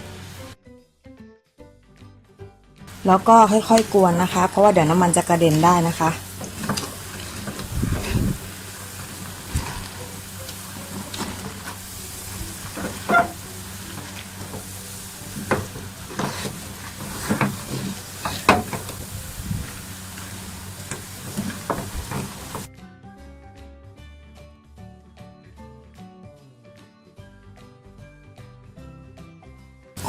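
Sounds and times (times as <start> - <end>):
low sizzle: 0.0 - 0.6, 2.9 - 22.7
spatula scraping a pan: 5.2 - 22.7.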